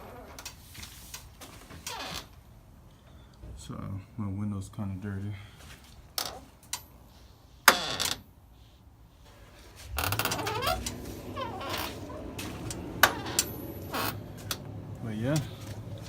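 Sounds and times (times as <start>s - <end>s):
metallic clicks of steering wheel hub: 10.2s - 11.0s.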